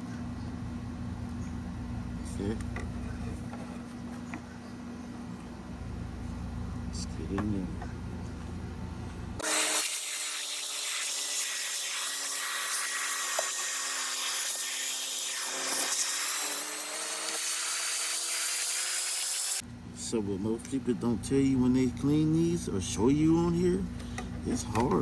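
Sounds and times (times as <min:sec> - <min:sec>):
small vacuum cleaner running: 0:09.4 - 0:19.6.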